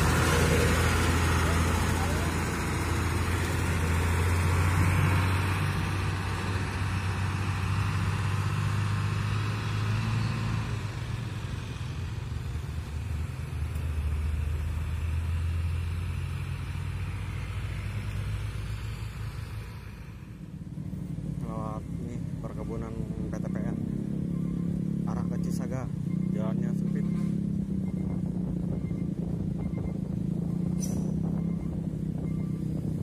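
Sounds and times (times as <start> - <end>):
vehicle engine running: 0.0 - 33.0.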